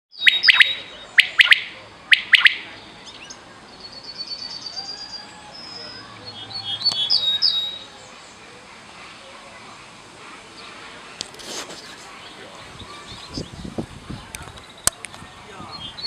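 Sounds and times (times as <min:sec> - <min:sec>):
quail calling: 0:00.2 - 0:02.8.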